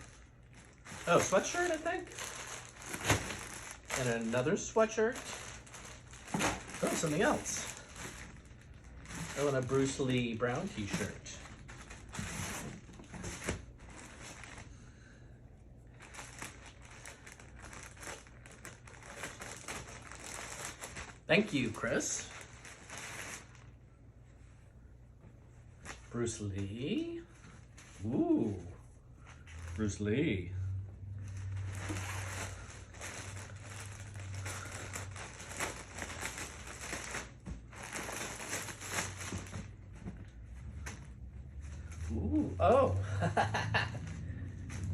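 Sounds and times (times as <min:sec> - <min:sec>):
packaging crinkling: 0:00.0 - 0:14.8, 0:15.9 - 0:23.8, 0:31.2 - 0:40.2
steady low hum: 0:00.0 - 0:44.9.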